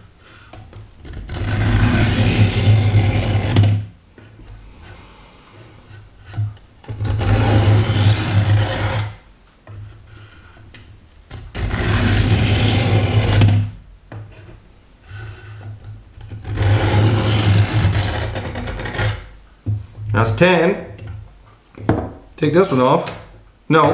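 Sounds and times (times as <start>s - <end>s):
knife blade scraping on stone: 15.2s - 19.4s.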